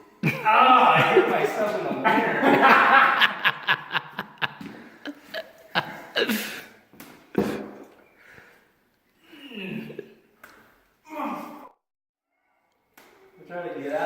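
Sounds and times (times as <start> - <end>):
person gasping and groaning: 5.8 - 6.7, 9.2 - 10.2, 11.0 - 11.8.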